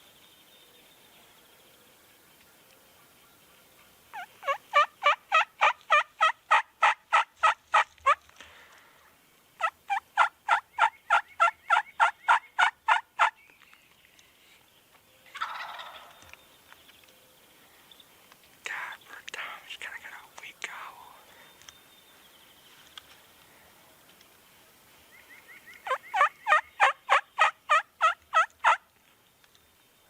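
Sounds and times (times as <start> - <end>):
turkey gobble: 4.1 - 8.2, 9.6 - 13.4, 15.3 - 16.3, 25.2 - 28.8
turkey yelps: 4.1 - 8.2, 9.6 - 13.3, 15.3 - 16.2, 25.2 - 28.8.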